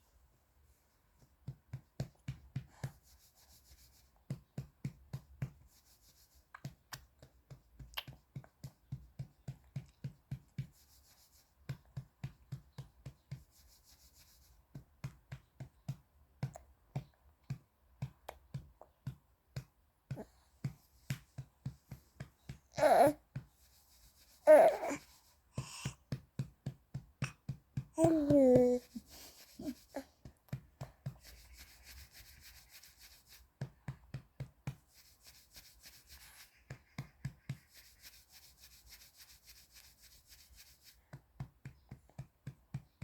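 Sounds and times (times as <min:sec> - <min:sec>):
hand patting baby's back: 0:25.6 - 0:31.3.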